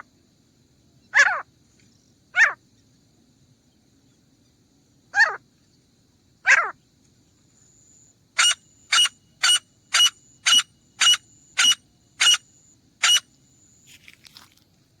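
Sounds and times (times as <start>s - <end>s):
francolin calling: 8.4s - 13.2s.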